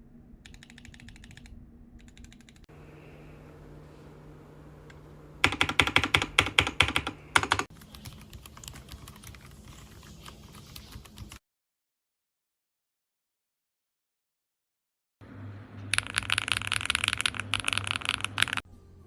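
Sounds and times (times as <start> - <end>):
mechanical keyboard typing: 0.5 - 2.6, 5.4 - 11.4, 15.9 - 18.6.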